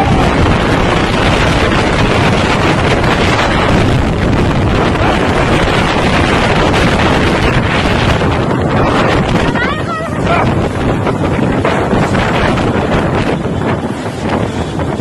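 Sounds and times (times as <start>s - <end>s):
storm wind on microphone: 0.0s - 15.0s.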